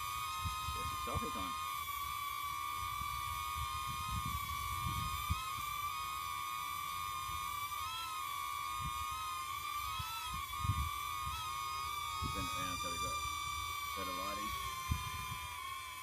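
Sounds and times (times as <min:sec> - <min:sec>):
drone propellers whining: 0:00.0 - 0:16.0.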